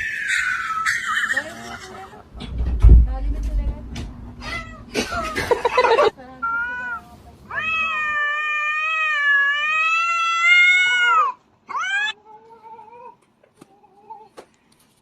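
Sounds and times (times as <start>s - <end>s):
cat yowling: 0.0s - 2.1s, 4.4s - 5.4s, 6.4s - 13.2s
cat meowing: 4.4s - 5.4s, 6.4s - 12.2s.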